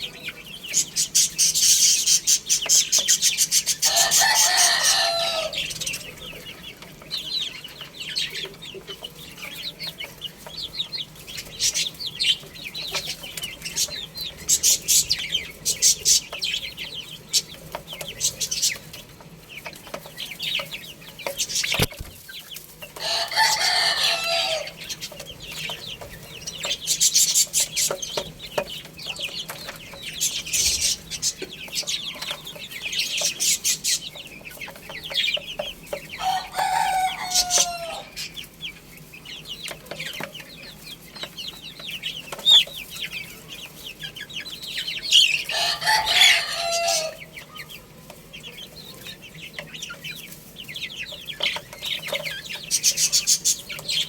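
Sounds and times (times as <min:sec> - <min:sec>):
chicken drawn-out calls: 0:00.0 - 0:54.0
chickens clucking: 0:00.0 - 0:54.0.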